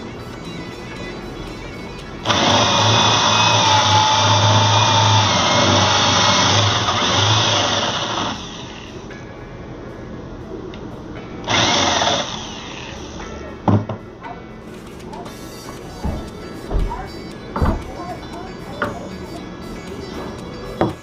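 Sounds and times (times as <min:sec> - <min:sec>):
electric power tool running: 0:02.2 - 0:09.1, 0:11.4 - 0:13.2.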